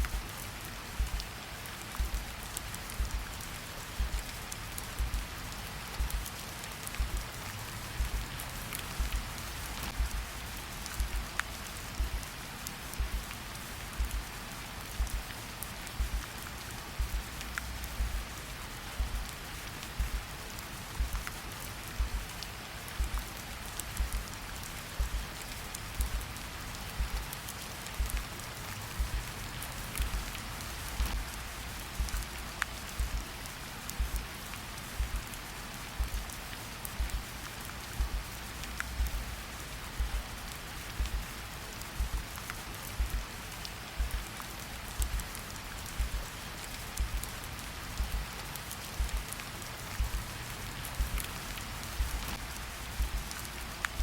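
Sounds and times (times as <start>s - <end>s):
slow heartbeat: 0.0s - 0.3s, 0.9s - 1.3s, 1.9s - 6.3s, 6.9s - 12.3s, 12.9s - 15.3s, 15.9s - 16.3s, 16.9s - 18.3s, 18.9s - 20.4s, 21.0s - 21.4s, 22.0s - 22.4s, 23.0s - 24.3s, 25.0s - 27.4s, 28.0s - 28.3s, 29.0s - 29.3s, 30.0s - 30.4s, 31.0s - 33.4s, 34.0s - 37.4s, 38.0s - 48.3s, 49.0s - 49.4s, 50.0s - 54.0s
steady rain falling: 0.0s - 54.0s.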